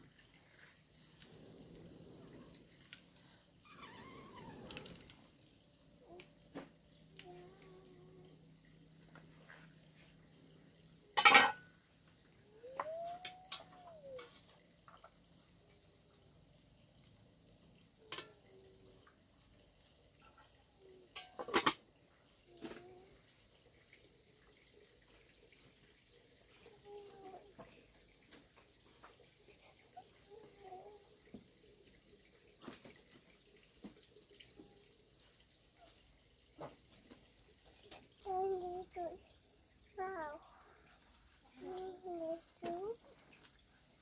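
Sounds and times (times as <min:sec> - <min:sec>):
insects droning: 0:00.0 - 0:44.0.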